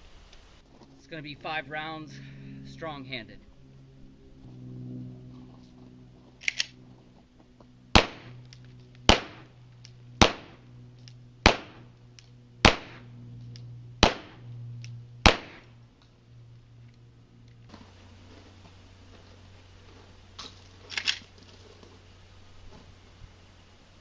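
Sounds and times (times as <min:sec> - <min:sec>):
shotgun shots: 0:07.9 - 0:08.4, 0:09.0 - 0:09.5, 0:10.2 - 0:10.6, 0:11.4 - 0:11.9, 0:12.6 - 0:13.1, 0:14.0 - 0:14.5, 0:15.2 - 0:15.7.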